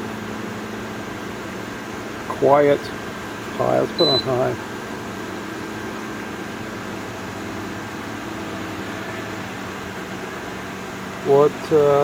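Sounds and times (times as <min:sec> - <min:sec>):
air conditioner fans running: 0:00.0 - 0:12.0.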